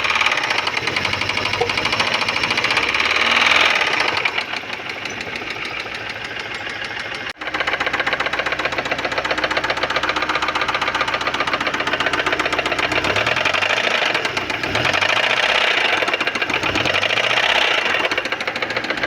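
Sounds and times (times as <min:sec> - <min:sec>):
car engine knocking: 0:00.0 - 0:19.0.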